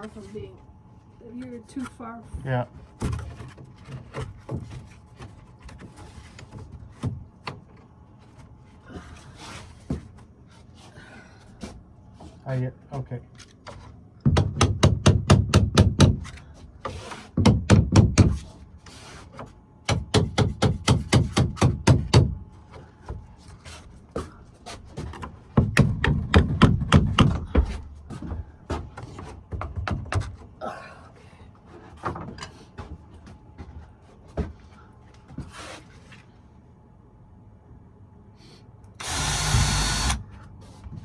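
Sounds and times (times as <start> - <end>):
knocking on wooden boards: 14.2 - 16.4, 17.3 - 18.5, 19.4 - 22.4, 24.2 - 30.5.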